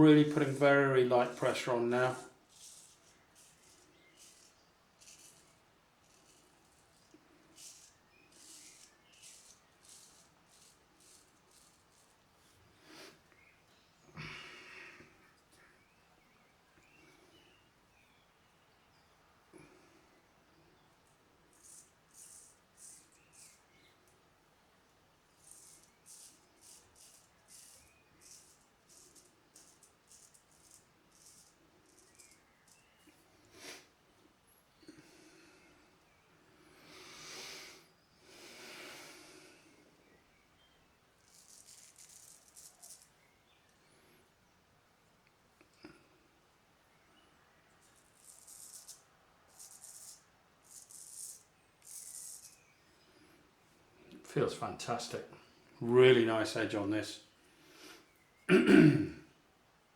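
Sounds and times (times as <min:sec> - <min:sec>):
razor scraping stubble: 0:00.0 - 0:13.0, 0:21.5 - 0:24.0, 0:25.3 - 0:33.8, 0:41.2 - 0:43.6, 0:47.8 - 0:52.7.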